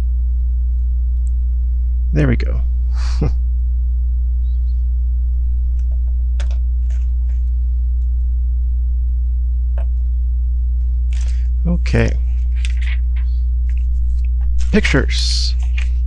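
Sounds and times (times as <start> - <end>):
electrical mains hum: 0.0 - 16.0.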